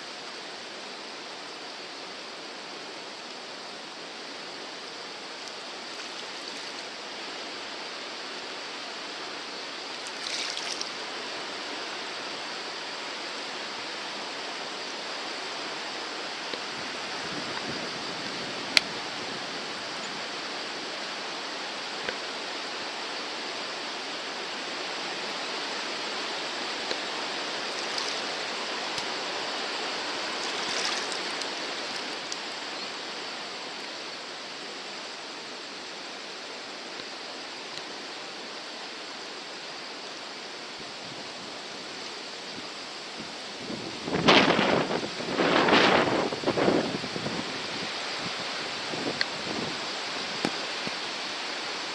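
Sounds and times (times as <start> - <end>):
river water rushing: 0.0 - 51.9
water splashing: 10.0 - 11.0, 26.9 - 32.6.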